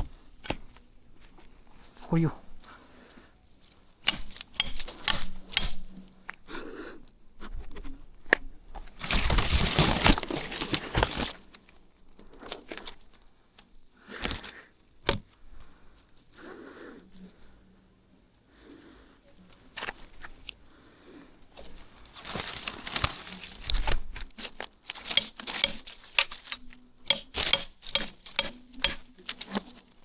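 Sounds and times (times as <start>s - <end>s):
rustling and scraping: 7.4s - 16.4s, 19.3s - 20.6s, 21.3s - 30.0s.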